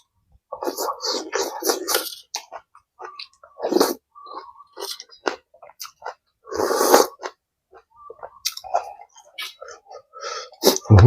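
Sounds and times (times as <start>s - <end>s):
chewing and smacking: 0.0s - 10.9s.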